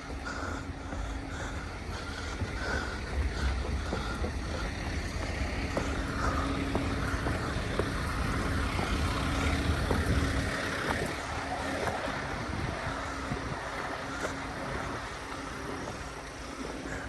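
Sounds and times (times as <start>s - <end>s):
vehicle engine running: 0.0s - 17.0s
wind buffeting microphone: 0.0s - 17.0s.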